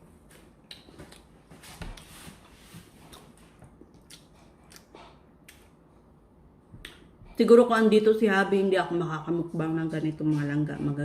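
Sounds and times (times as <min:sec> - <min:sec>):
person chewing and eating: 0:00.2 - 0:07.2.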